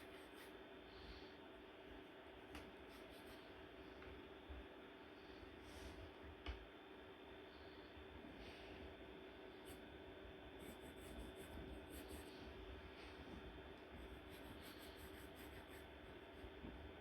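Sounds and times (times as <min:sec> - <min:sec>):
scratching of drawing strokes: 0:00.0 - 0:00.6, 0:02.8 - 0:03.5, 0:10.5 - 0:17.0
low steady hum: 0:00.0 - 0:17.0.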